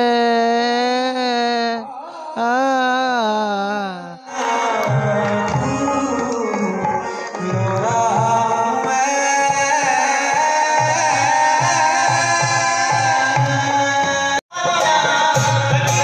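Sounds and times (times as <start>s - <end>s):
tabla drumming: 4.2s - 16.0s.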